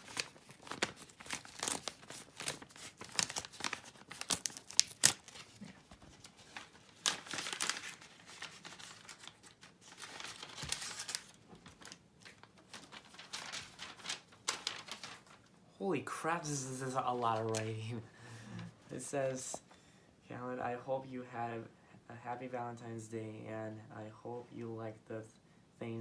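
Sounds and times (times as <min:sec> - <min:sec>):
paper envelope being torn open: 0:00.0 - 0:15.4.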